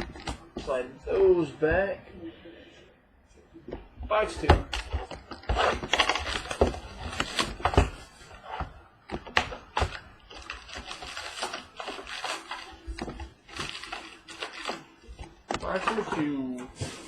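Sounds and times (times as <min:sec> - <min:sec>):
packaging rustling: 0:04.1 - 0:17.0.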